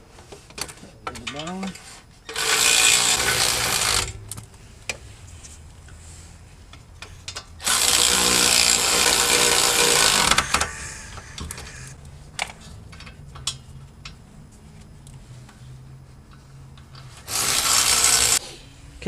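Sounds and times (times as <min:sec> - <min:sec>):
power tool driving bolts: 0:02.3 - 0:04.4, 0:07.0 - 0:12.5, 0:17.2 - 0:18.4.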